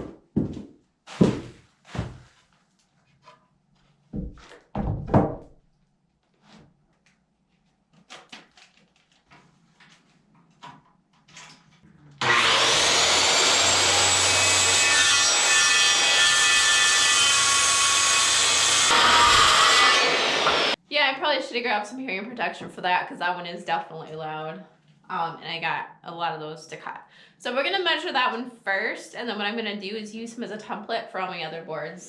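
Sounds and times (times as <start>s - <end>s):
power saw cutting wood: 12.2s - 20.8s.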